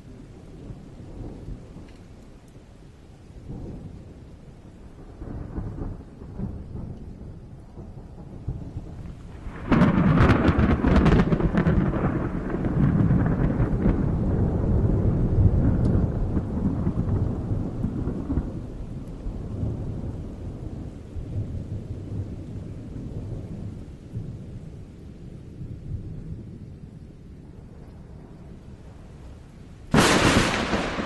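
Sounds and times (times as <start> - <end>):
thunder rolling: 5.0 - 24.4, 29.8 - 31.0.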